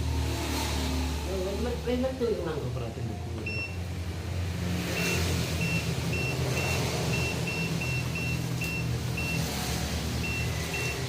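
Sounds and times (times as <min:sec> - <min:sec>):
short high beeps: 0:05.0 - 0:09.4.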